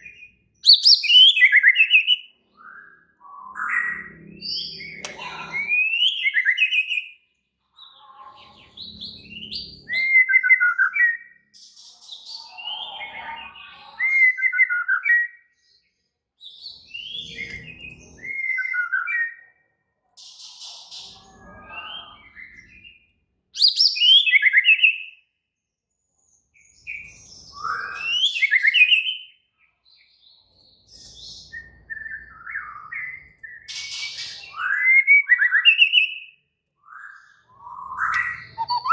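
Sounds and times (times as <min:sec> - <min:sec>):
bird singing rapid whistles: 0:00.1 - 0:07.1, 0:23.6 - 0:25.2, 0:31.4 - 0:37.0, 0:37.6 - 0:38.9.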